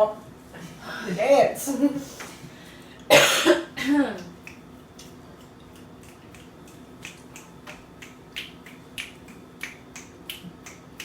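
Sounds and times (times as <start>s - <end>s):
fingers snapping: 4.4s - 11.0s.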